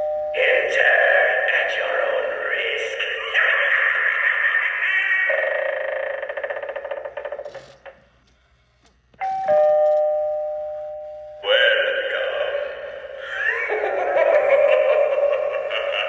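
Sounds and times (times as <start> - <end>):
spooky sound effect: 0.4 - 7.4, 11.4 - 16.0.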